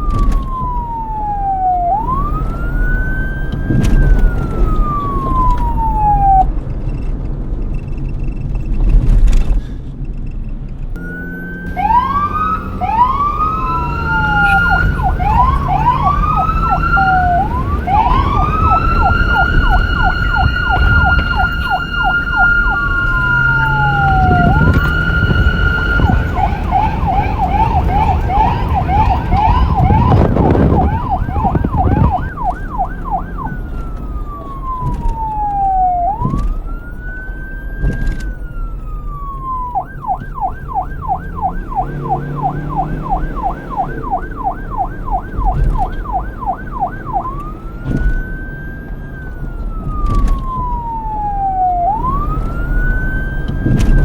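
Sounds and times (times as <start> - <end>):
police siren wailing and yelping: 0.0 - 6.6, 11.0 - 54.0
low rumble: 12.8 - 37.0.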